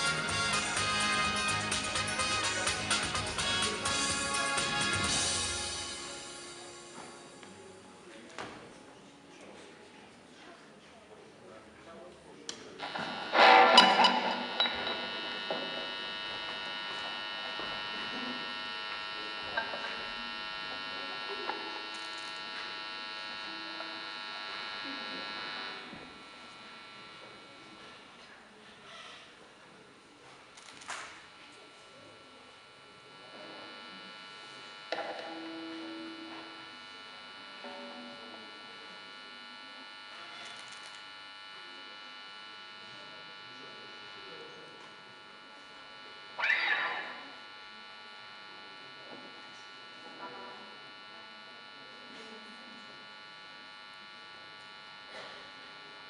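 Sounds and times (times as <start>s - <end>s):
guitar amp hum and buzz: 0.0s - 8.7s, 12.4s - 56.0s
picked guitar note ringing: 12.8s - 21.9s.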